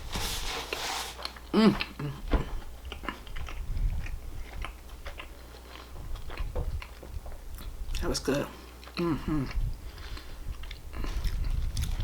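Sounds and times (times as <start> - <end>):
person chewing food: 0.7 - 12.0
person humming: 1.5 - 2.3, 9.0 - 9.6.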